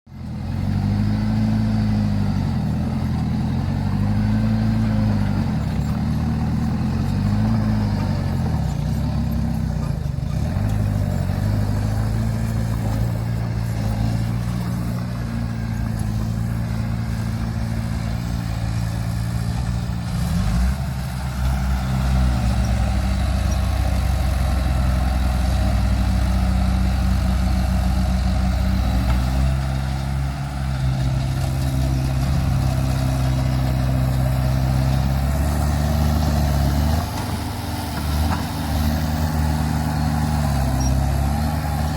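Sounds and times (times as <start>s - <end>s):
heavy diesel engine revving: 0.2s - 41.9s.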